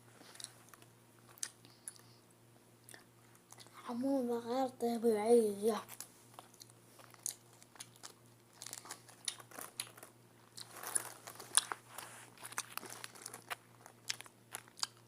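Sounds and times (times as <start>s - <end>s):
person crunching sour candy: 5.9s - 11.8s, 12.4s - 15.0s.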